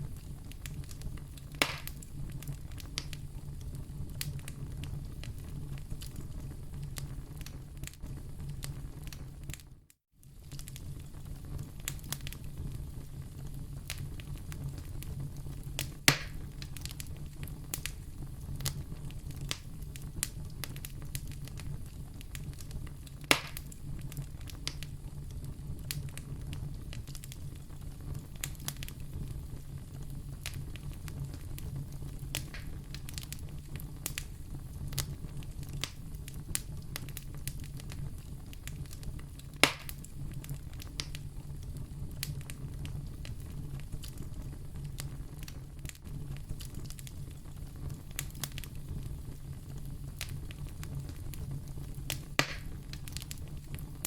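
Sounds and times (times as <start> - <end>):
fire crackling: 0.0 - 54.0
loud sharp fire pops: 0.1 - 3.3, 15.8 - 18.0, 23.2 - 24.9, 30.4 - 38.0, 38.6 - 41.3, 50.1 - 54.0.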